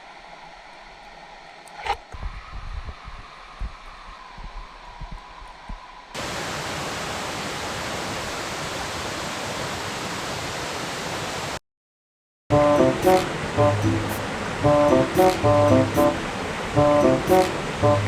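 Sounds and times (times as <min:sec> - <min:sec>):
stream water rushing: 0:06.2 - 0:11.5, 0:12.6 - 0:18.0
plucked background music: 0:12.5 - 0:18.0.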